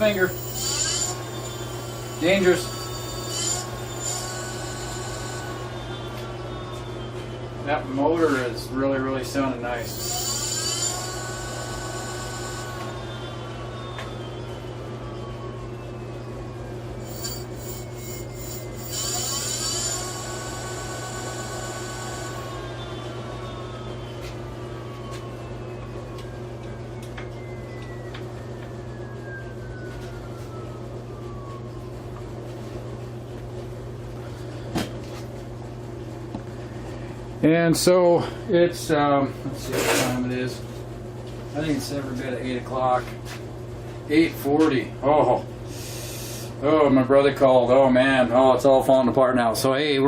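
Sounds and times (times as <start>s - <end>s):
electric motor whining: 0.0s - 7.0s, 9.6s - 14.4s, 17.0s - 25.3s
steady low hum: 0.0s - 50.0s.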